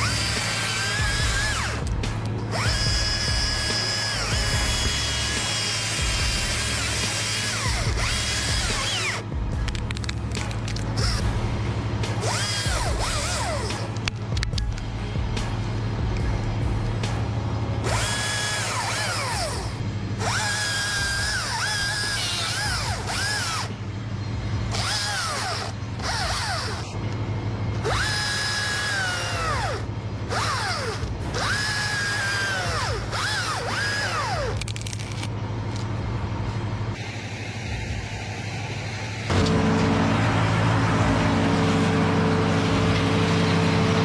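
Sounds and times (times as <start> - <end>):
chainsaw revving: 0.0 - 14.8, 17.8 - 23.7
steady low hum: 0.0 - 44.0.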